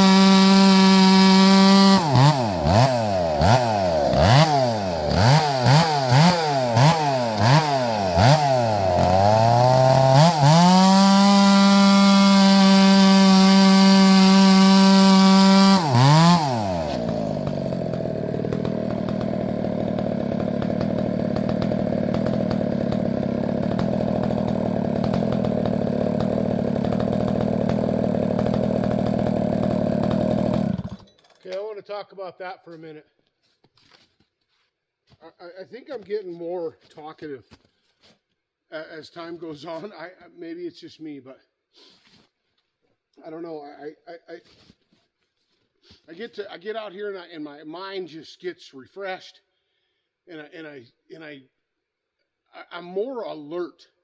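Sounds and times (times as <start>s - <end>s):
chainsaw cutting firewood: 0.0s - 31.2s.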